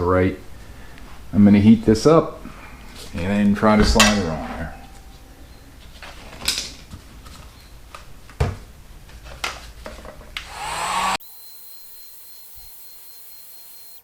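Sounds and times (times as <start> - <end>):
hot-air blower whining: 10.4 - 14.0.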